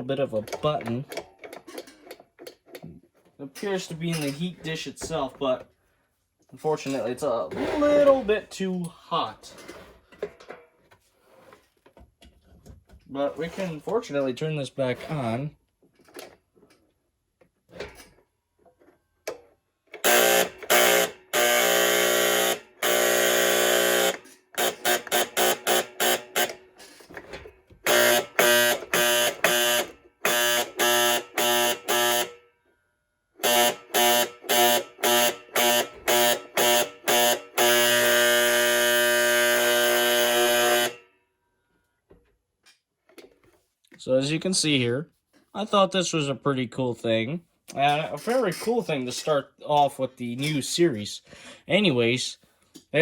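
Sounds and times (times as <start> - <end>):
buzzing fire alarm horn: 20.0 - 26.6, 27.8 - 32.5, 33.4 - 41.2.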